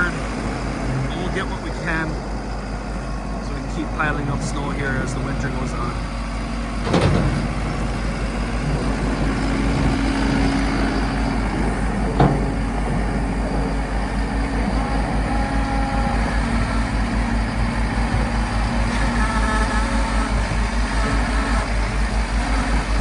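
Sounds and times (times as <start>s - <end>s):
diesel engine running: 0.0s - 23.0s.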